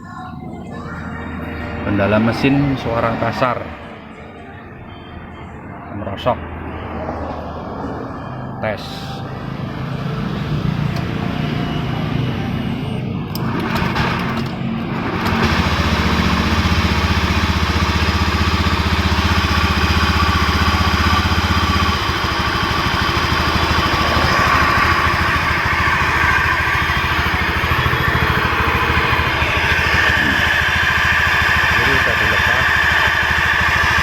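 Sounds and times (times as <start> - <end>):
rough scooter engine running: 9.4 - 34.0.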